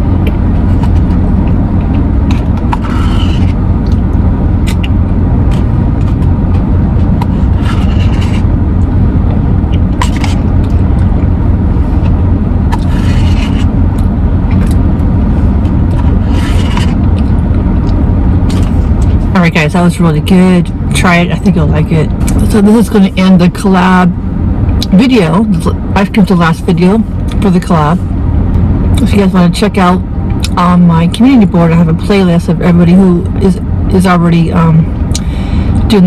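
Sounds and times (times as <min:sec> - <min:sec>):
low rumble of car: 0:00.0 - 0:36.0
short scrapes: 0:02.3 - 0:03.6, 0:07.2 - 0:08.5, 0:12.7 - 0:13.7, 0:16.2 - 0:17.0.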